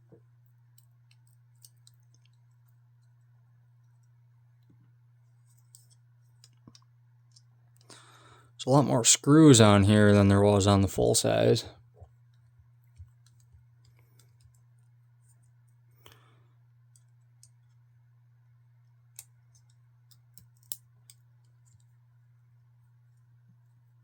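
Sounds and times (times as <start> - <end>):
low hum: 7.9 - 11.7.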